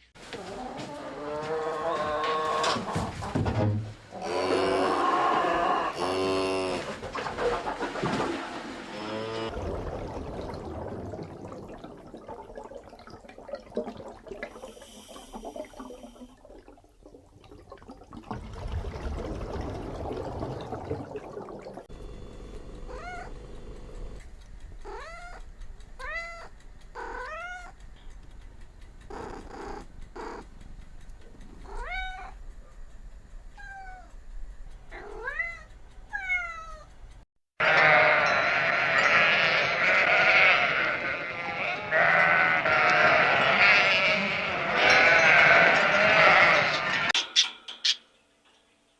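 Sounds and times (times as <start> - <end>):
indistinct low noise: 9.5 - 24.9
cat meowing: 22.9 - 23.4, 24.8 - 25.4, 26.0 - 27.8, 31.6 - 32.4, 35.0 - 36.9.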